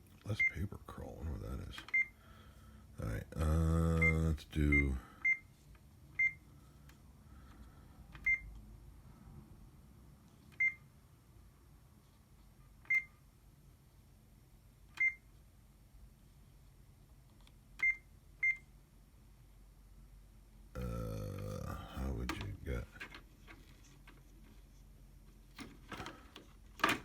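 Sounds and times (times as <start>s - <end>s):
keypad beeps: 1.8s - 2.1s, 6.2s - 6.4s, 8.2s - 8.5s, 10.6s - 10.8s, 12.9s - 13.1s, 15.0s - 15.3s, 17.8s - 18.6s.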